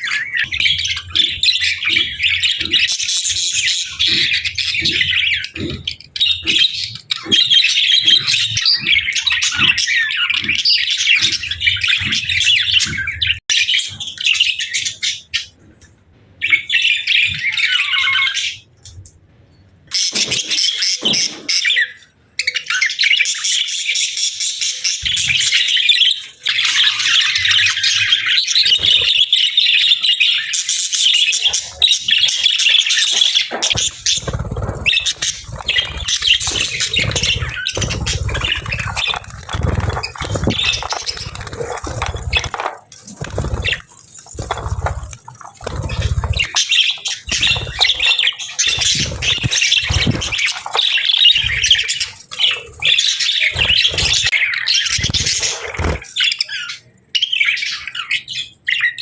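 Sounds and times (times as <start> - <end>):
budgerigars chirping: 0.0 - 15.5, 20.1 - 59.0
bird squawks: 19.9 - 59.0.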